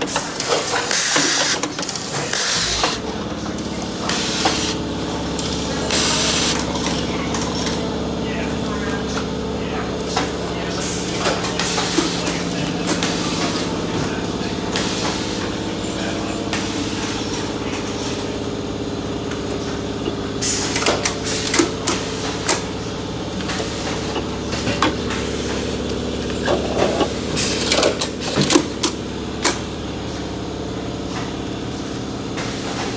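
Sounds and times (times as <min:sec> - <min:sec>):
sharp mechanical clicks and clatter: 0:00.0 - 0:03.1, 0:10.0 - 0:13.8, 0:19.3 - 0:29.6
packaging machinery humming: 0:00.0 - 0:32.9.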